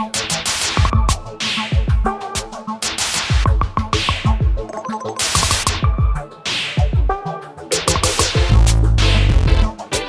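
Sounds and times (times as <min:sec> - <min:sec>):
electronic pop song: 0:00.0 - 0:10.0
deep kick drums: 0:00.8 - 0:02.1, 0:03.3 - 0:04.6, 0:05.6 - 0:06.2, 0:07.9 - 0:09.8.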